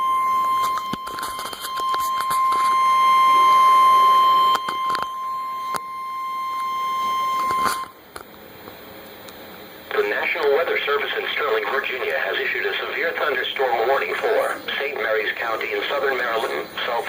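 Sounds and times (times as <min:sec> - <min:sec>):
loud high alarm beep: 0:00.0 - 0:08.0
radio static clicks: 0:00.6 - 0:02.8, 0:07.4 - 0:17.0.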